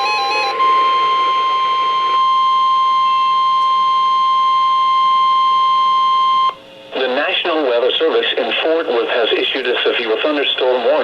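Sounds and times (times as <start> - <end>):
radio static hiss: 0.0 - 3.1, 6.8 - 11.0
steady alarm beep: 0.0 - 6.6.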